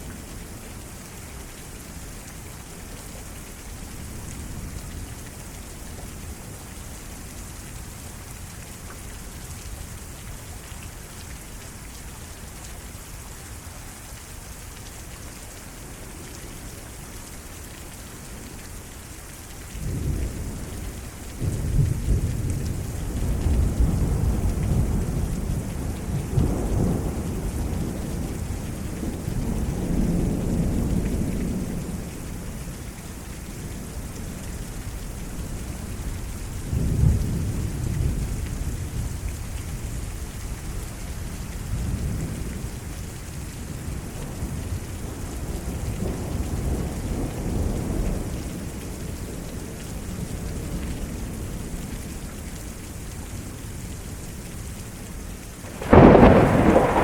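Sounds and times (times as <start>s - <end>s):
heavy rain falling: 0.0s - 57.0s
thunder rumbling: 55.6s - 57.0s.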